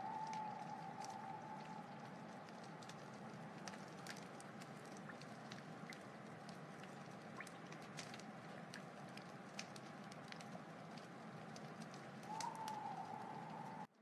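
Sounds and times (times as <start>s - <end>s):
thin whistling tone: 0.0s - 2.1s, 12.2s - 13.9s
wood fire crackling: 0.0s - 14.0s.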